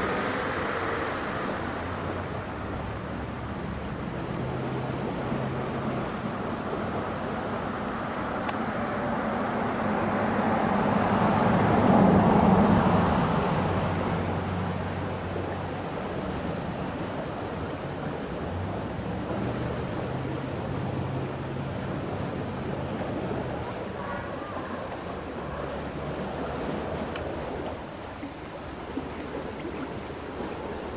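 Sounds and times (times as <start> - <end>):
vehicle passing by: 8.8 - 16.5.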